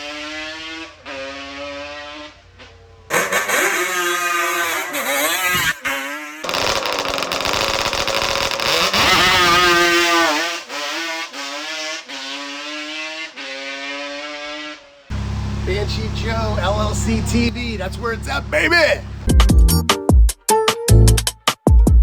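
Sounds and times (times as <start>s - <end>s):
two-stroke engine revving hard: 0.0s - 19.3s
guitar music: 16.5s - 21.3s.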